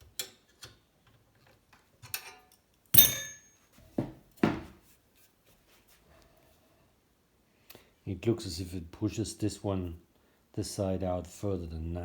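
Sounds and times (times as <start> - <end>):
loud metallic clank: 3.0 - 3.5.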